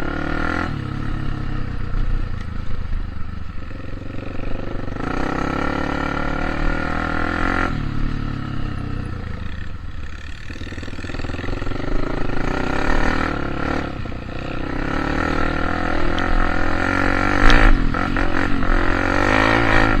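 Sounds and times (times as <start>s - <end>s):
engine revving: 4.8s - 9.6s, 10.7s - 20.0s.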